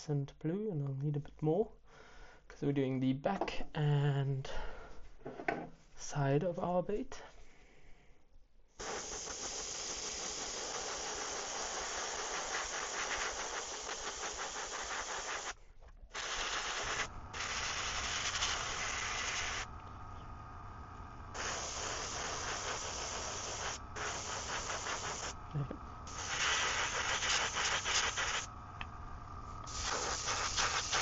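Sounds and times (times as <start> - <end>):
airbrush hissing: 8.8 - 31.0.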